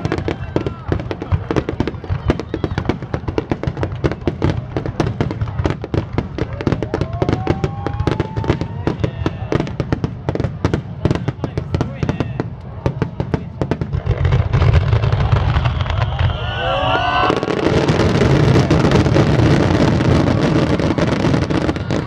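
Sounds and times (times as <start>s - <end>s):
fireworks bangs and booming: 0.0s - 22.0s
fireworks crackle: 0.0s - 22.0s
fireworks whistling: 12.8s - 22.0s.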